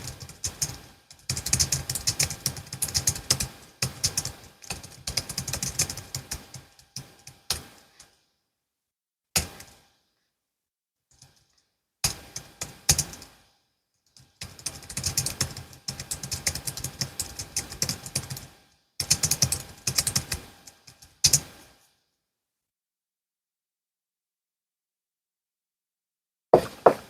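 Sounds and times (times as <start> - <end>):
keyboard typing: 0.0 - 7.8, 14.2 - 21.6.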